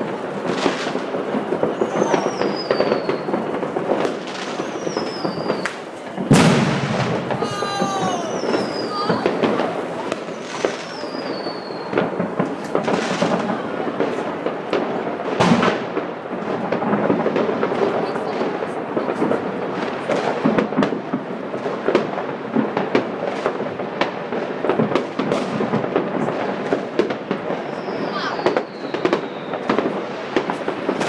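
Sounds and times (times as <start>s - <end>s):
fireworks banging and crackling: 0.0s - 31.0s
loud firework bang: 1.7s - 16.0s
firework whistle falling in pitch: 4.5s - 13.5s.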